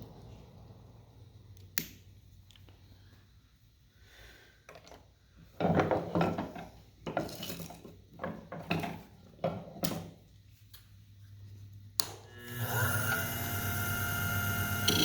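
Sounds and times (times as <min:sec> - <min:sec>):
hand tool scraping: 0:14.8 - 0:15.0.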